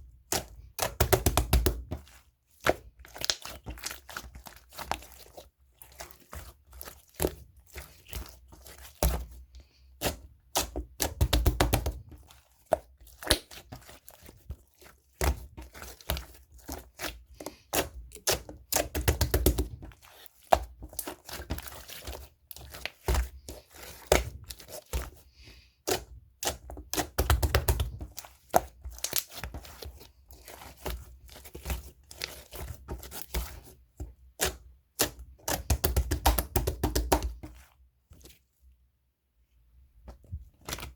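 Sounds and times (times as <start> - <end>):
sticky slime crackling and popping: 0.3 - 9.3, 10.0 - 12.1, 12.7 - 14.4, 25.9 - 33.5.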